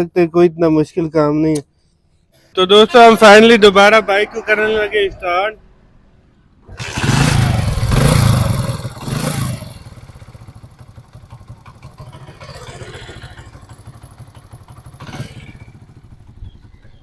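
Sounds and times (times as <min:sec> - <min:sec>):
motorcycle engine starting and revving: 0:06.6 - 0:17.0.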